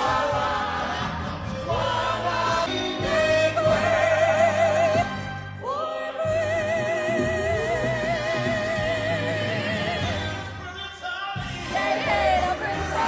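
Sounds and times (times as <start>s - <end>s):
musical accompaniment: 0.0s - 13.0s.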